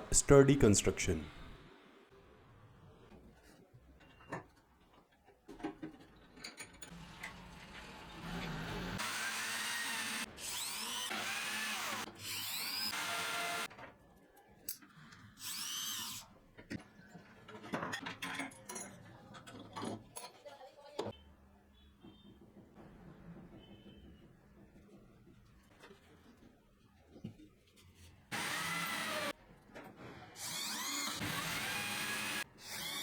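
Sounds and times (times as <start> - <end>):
power drill driving screws: 9.0 - 13.7, 28.3 - 29.3, 30.4 - 33.0.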